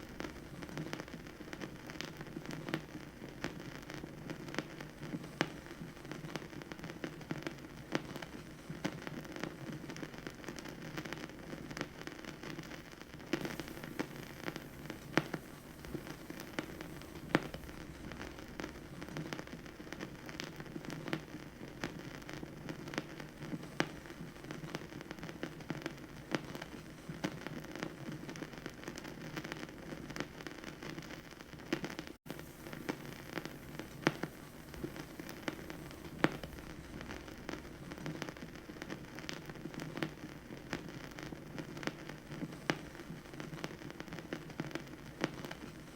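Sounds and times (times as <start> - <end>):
vinyl crackles and pops: 0.0 - 45.9
vinyl record hiss and rumble: 0.0 - 45.9.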